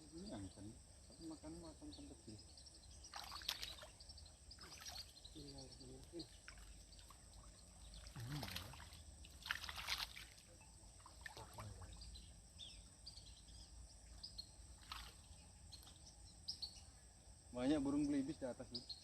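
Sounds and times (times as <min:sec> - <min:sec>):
high bird chirps: 0:00.3 - 0:09.1.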